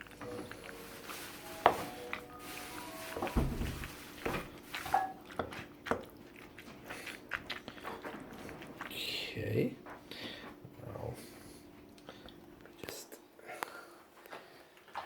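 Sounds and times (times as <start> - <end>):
spoon stirring thick food: 0.0 - 9.1.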